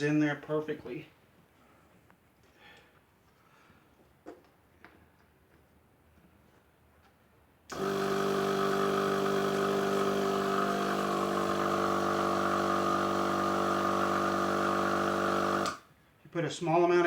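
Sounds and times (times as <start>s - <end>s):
air compressor humming: 7.7s - 15.8s.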